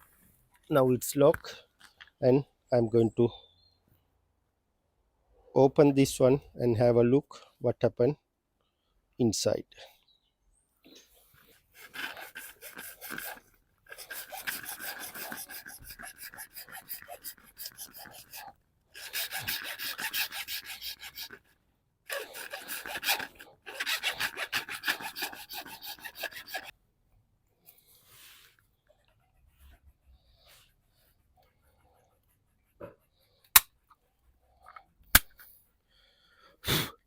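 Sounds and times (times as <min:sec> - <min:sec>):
hand tool rasping on plastic: 0:11.6 - 0:26.7.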